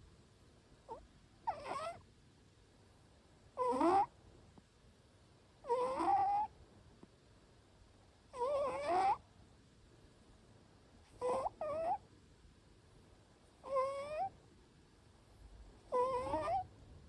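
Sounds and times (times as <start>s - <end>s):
cat snoring: 0.9s - 2.0s, 3.6s - 4.1s, 5.6s - 6.5s, 8.3s - 9.2s, 11.1s - 12.0s, 13.6s - 14.3s, 15.9s - 16.6s.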